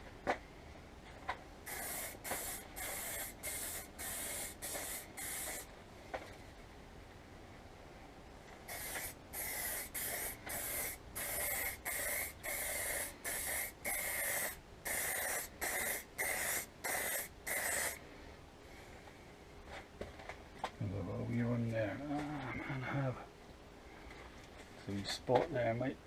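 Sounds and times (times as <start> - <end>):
aerosol spray can spraying: 1.7 - 5.7, 8.7 - 18.0.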